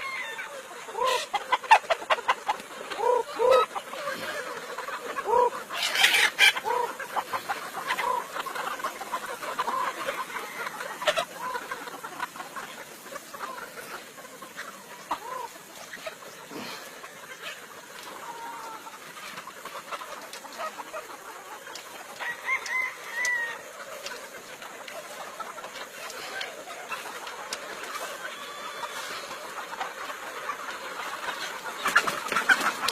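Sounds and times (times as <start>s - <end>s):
chickens clucking: 0.0s - 32.9s
rooster crowing: 22.2s - 23.7s.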